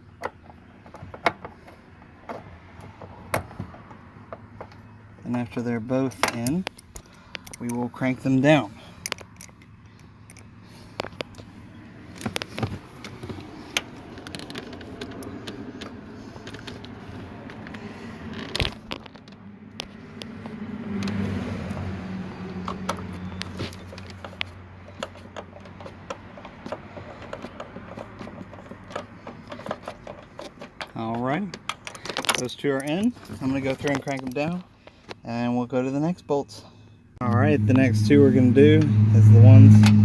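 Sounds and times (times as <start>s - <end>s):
metal tools clicking and scraping: 6.1s - 7.8s, 8.8s - 11.4s, 22.6s - 34.6s.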